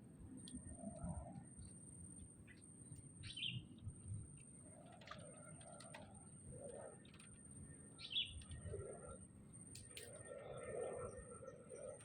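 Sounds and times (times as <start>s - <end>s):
faint bird calls: 8.0s - 8.9s.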